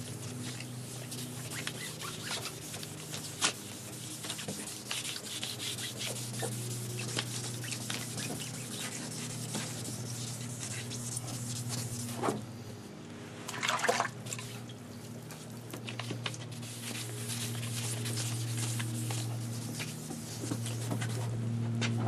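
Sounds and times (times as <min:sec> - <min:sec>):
sandpaper rubbing on plastic: 0:00.0 - 0:12.3, 0:16.5 - 0:21.3.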